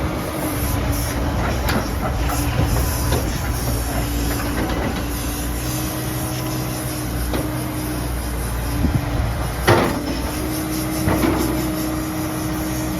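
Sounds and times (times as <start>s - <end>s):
excavator diesel engine whining: 0.0s - 12.9s.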